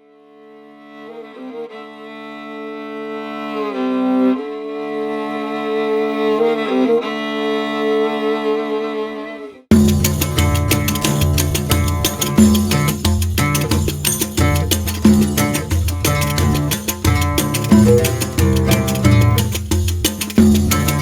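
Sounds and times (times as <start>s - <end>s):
slow bowed string notes: 10.2s - 19.6s.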